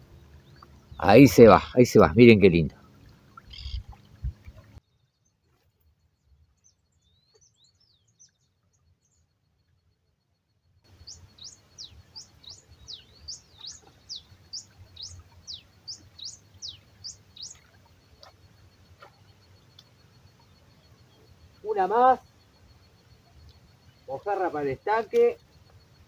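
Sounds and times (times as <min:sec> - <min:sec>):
bird chirping: 0:00.0 - 0:05.1, 0:10.9 - 0:26.0.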